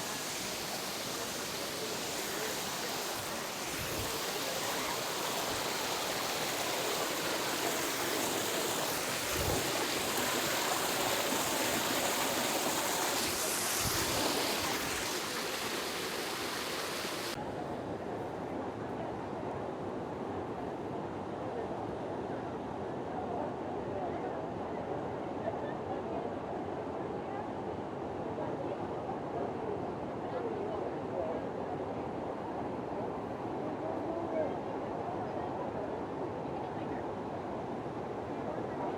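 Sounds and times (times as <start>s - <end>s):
waterfall rushing: 0.0s - 17.4s.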